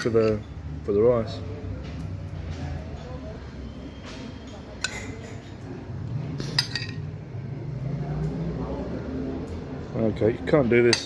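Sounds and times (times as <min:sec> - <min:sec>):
spoon clinking against plates: 0:00.0 - 0:00.8, 0:04.3 - 0:07.2, 0:10.7 - 0:11.0.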